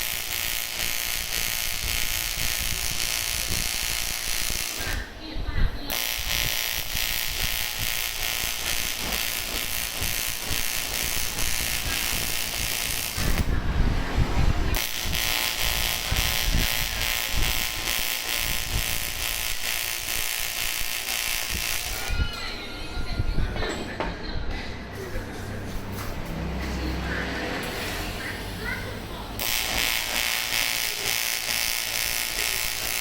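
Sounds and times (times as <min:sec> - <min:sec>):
welding arc hissing: 0:00.0 - 0:05.2, 0:05.9 - 0:13.6, 0:14.7 - 0:22.2, 0:27.6 - 0:33.0.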